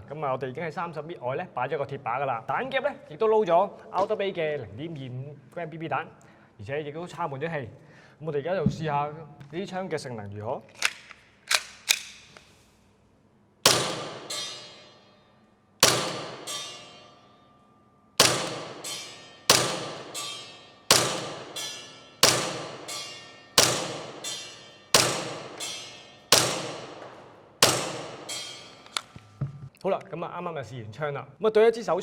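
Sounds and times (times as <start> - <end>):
airsoft pistol shots: 13.7 - 14.8, 15.8 - 16.9, 18.2 - 29.2
bb pinging on steel target: 13.7 - 17.5, 18.2 - 29.4.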